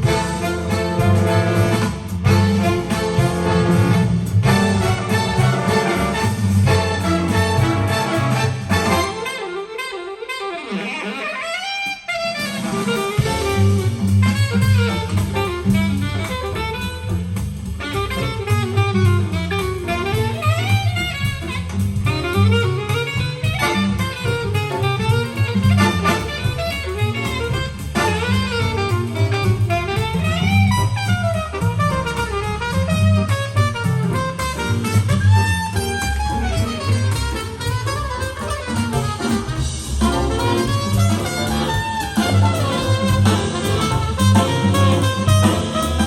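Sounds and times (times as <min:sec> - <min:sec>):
big band jazz over loudspeakers: 0:00.0 - 0:46.0.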